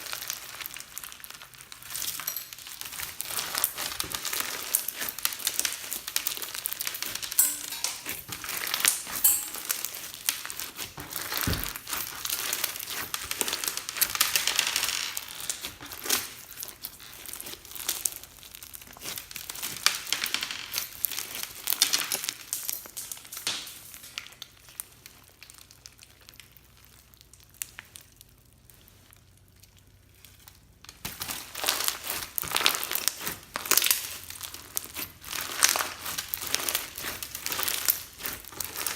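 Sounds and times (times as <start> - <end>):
hands squishing slime: 0.0 - 38.9.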